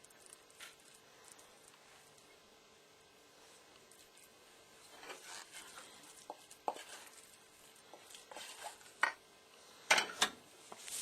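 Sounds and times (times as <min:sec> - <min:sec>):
spoon scraping thick mixture: 0:03.8 - 0:09.2.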